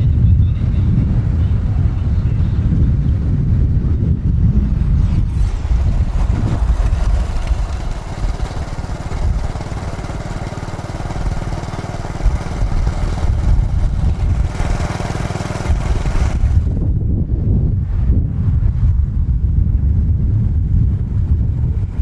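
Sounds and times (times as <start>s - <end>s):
road traffic: 0.0s - 17.0s
motorcycle engine rumble: 0.0s - 22.0s.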